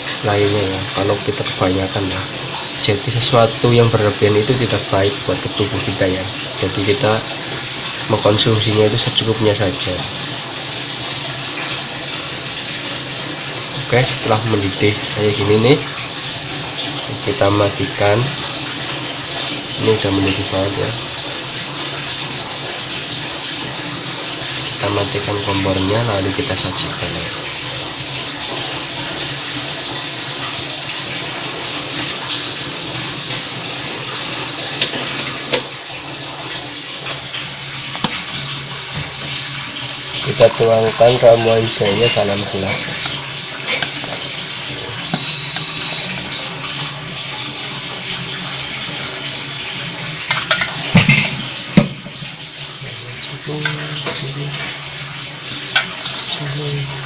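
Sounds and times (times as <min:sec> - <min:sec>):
water boiling and bubbling: 0:00.0 - 0:57.0
kitchenware clinking: 0:40.9 - 0:44.3, 0:50.2 - 0:52.2, 0:55.7 - 0:56.3
watery hiss: 0:44.9 - 0:46.4.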